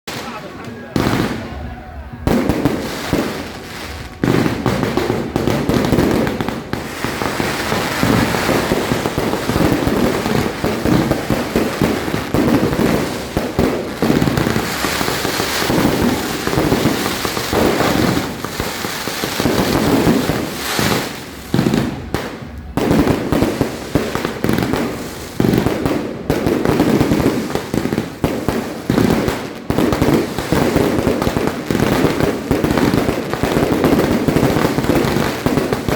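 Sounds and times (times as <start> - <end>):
fireworks cracking and banging: 0.0 - 35.9.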